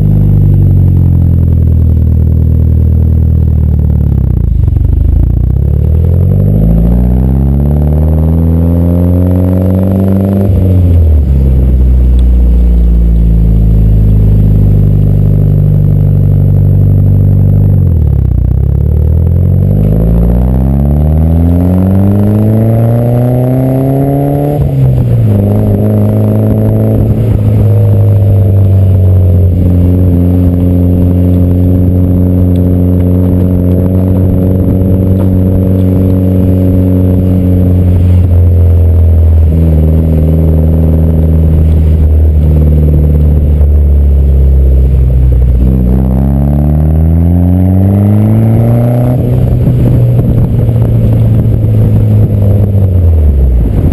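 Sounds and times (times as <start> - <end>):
car engine accelerating: 0.0 - 53.9.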